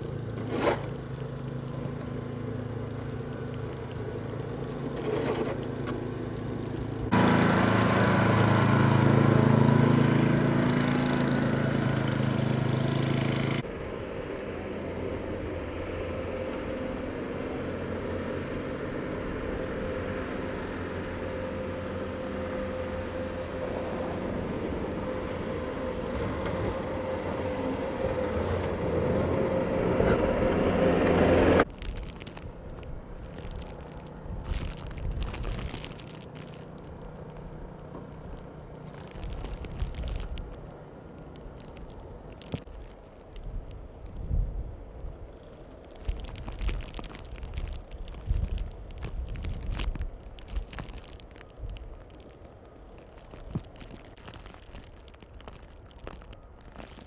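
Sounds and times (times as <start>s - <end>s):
vehicle engines passing: 0.0s - 44.1s.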